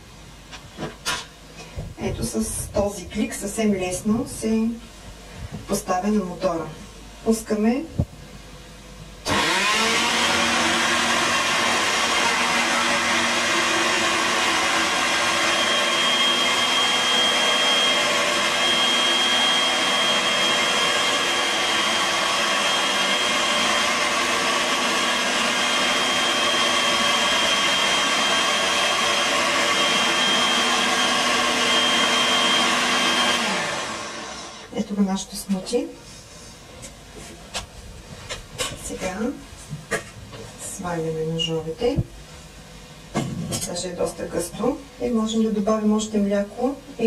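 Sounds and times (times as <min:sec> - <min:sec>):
blender running: 0:09.2 - 0:34.8.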